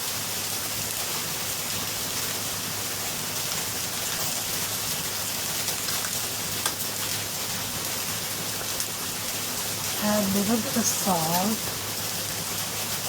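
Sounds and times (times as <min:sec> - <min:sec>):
peppers sizzling in a pan: 0:00.0 - 0:13.0.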